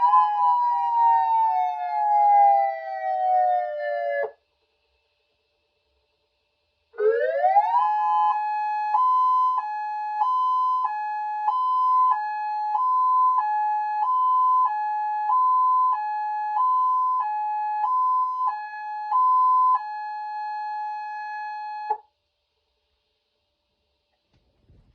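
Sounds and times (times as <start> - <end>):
two-tone electronic siren: 0.0 - 4.4, 7.0 - 22.0.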